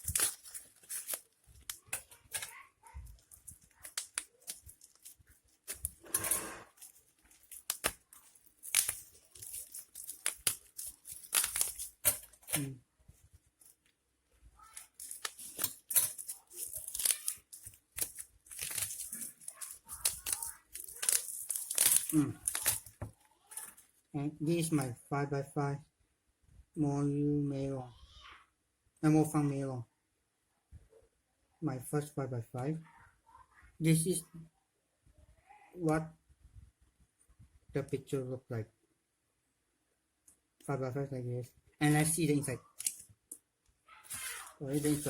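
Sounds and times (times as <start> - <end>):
packaging wrapper tearing and crinkling: 0.0 - 12.8, 14.6 - 23.9, 42.7 - 43.1, 44.0 - 45.0.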